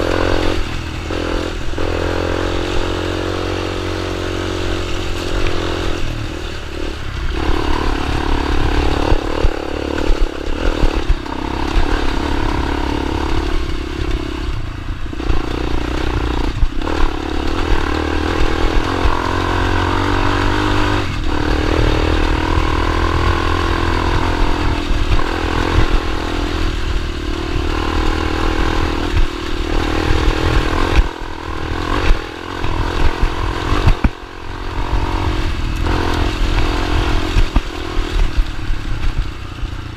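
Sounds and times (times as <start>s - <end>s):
dirt bike engine running: 0.0s - 39.9s.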